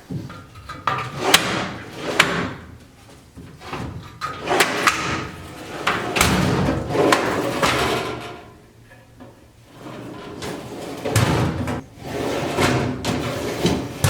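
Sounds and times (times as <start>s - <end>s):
metal drawers rolling and clacking: 3.5s - 8.5s, 9.7s - 14.0s.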